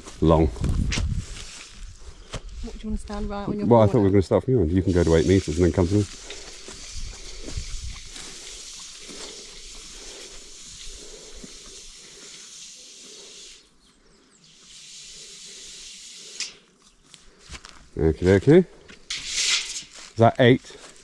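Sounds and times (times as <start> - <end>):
steady hiss: 4.7 - 13.8, 14.4 - 16.8, 18.4 - 20.6.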